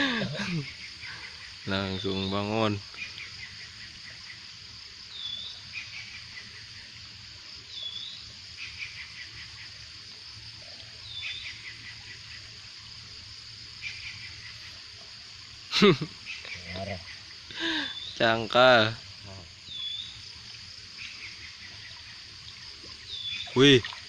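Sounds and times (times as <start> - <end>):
insect chorus drone: 0.0 - 24.0
bird chirping call: 19.7 - 20.2.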